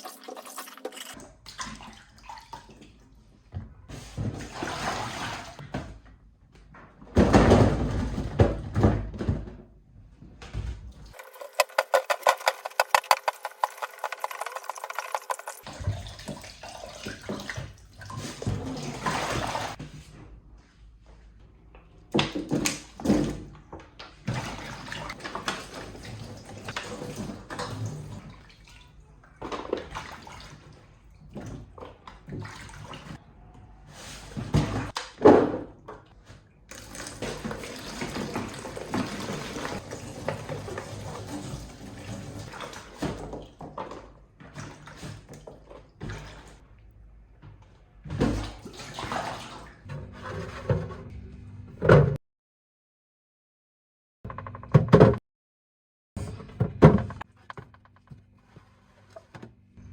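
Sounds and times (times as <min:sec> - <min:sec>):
water running: 0:00.0 - 0:01.2, 0:11.1 - 0:19.8.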